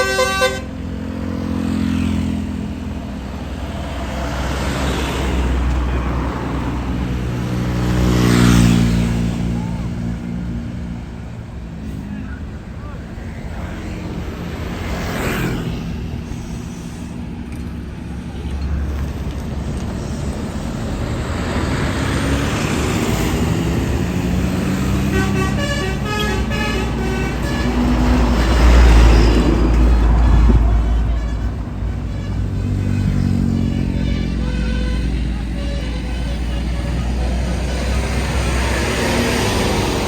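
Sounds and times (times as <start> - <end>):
multi-tone bus horn: 0.0 - 2.4, 19.7 - 40.0
bus engines running: 0.0 - 40.0.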